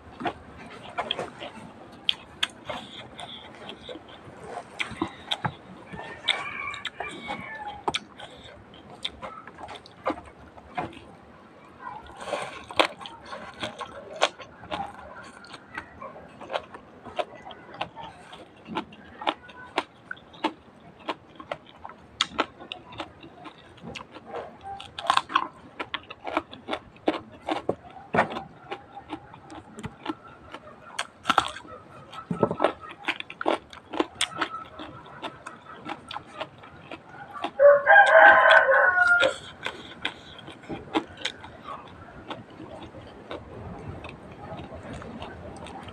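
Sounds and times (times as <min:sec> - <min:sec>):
chewing and crunching: 0:00.0 - 0:45.9
rooster crowing: 0:05.9 - 0:07.9, 0:37.5 - 0:39.5.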